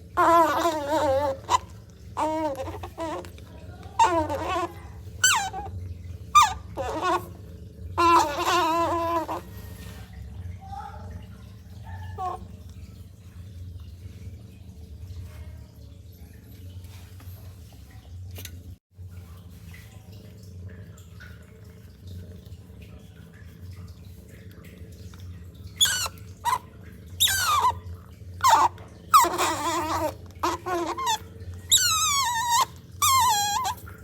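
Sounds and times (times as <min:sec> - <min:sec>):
otter squealing: 0:00.0 - 0:09.9, 0:12.0 - 0:12.4, 0:25.8 - 0:27.8, 0:28.4 - 0:34.0
otter lapping milk: 0:00.0 - 0:10.4, 0:24.1 - 0:34.0.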